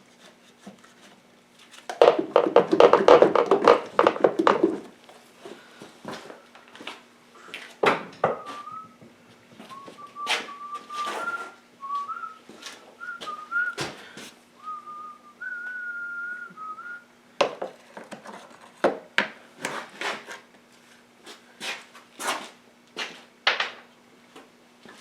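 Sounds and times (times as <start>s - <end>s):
person whistling a tune: 8.2s - 9.0s, 9.7s - 14.0s, 14.6s - 17.1s.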